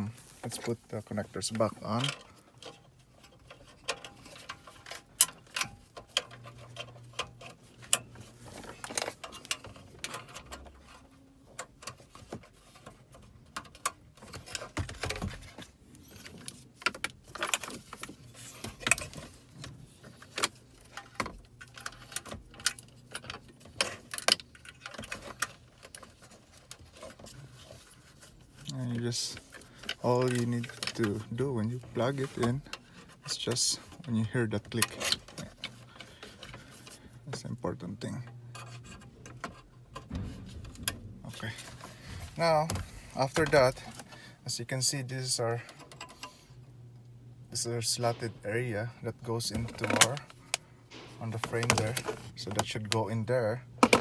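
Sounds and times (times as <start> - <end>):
connectors latching: 28.5 - 44.4, 45.6 - 54.0
plastic connectors clicking and rattling: 49.5 - 52.7.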